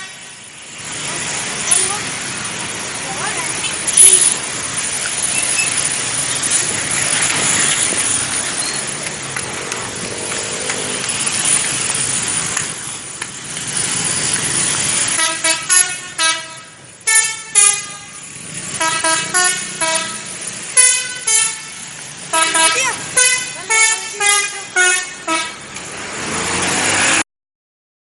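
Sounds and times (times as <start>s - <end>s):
road and engine noise: 0.0s - 27.3s
musical air horn tune: 15.1s - 25.7s.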